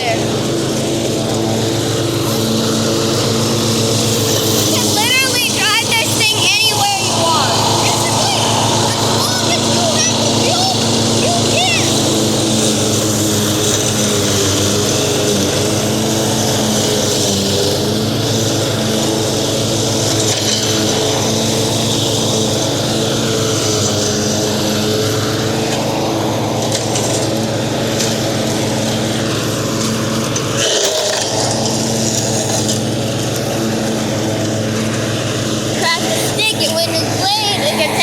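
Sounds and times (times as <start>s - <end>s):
riding lawn mower engine running: 0.0s - 38.0s.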